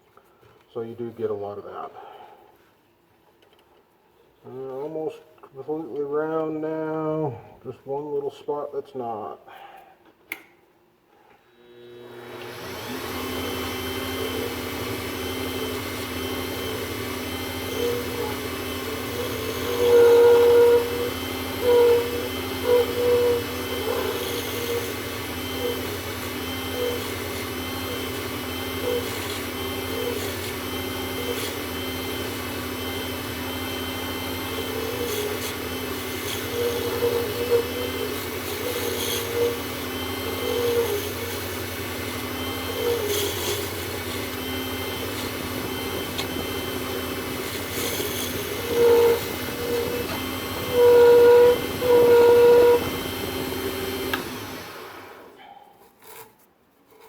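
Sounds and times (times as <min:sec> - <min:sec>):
lathe running: 0:12.0 - 0:55.3
turning tool scraping acrylic: 0:12.6 - 0:57.0.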